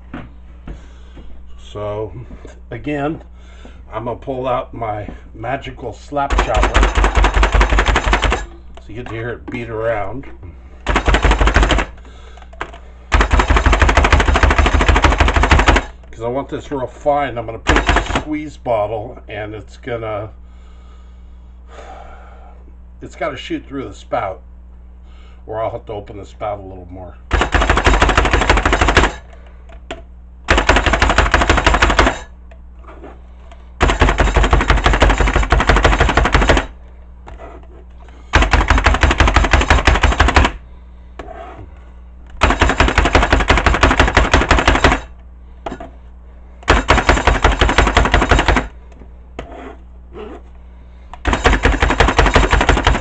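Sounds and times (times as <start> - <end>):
food chopper slapping down: 51.2 - 53.0.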